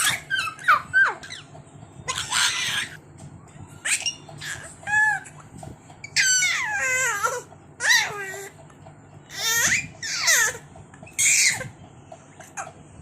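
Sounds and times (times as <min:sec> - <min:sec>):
baby squealing and shrieking: 0:00.0 - 0:01.5, 0:02.1 - 0:03.0, 0:03.8 - 0:05.4, 0:06.1 - 0:08.5, 0:09.3 - 0:11.7.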